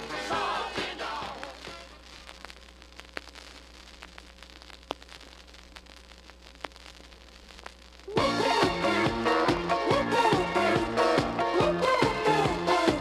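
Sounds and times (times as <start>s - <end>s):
disco music: 0.0s - 2.1s, 8.1s - 13.0s
vinyl crackle and pops: 0.0s - 13.0s.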